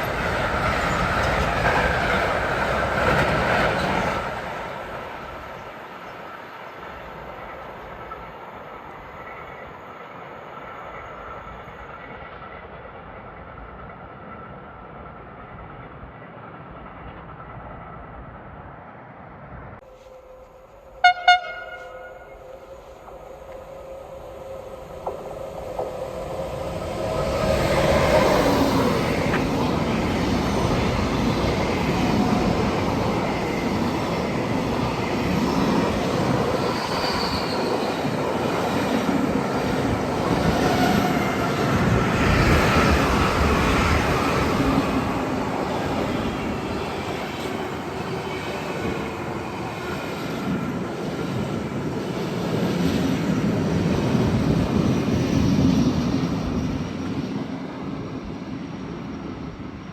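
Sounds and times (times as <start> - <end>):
train wheels on rails: 0.0 - 59.9.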